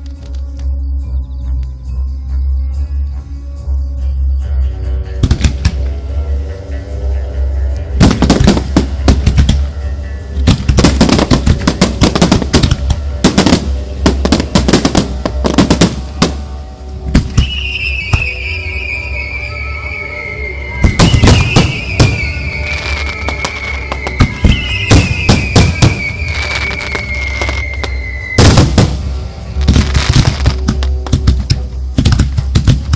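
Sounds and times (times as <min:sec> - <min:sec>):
music: 0:00.0 - 0:32.9
fireworks exploding: 0:08.0 - 0:09.8, 0:10.4 - 0:32.9
firework whistle falling in pitch: 0:11.1 - 0:31.6.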